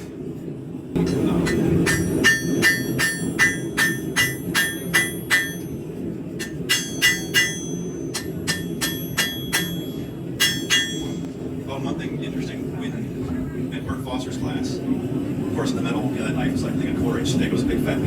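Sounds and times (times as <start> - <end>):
hammer ringing on blade on anvil: 1.0 - 5.8, 6.4 - 11.3.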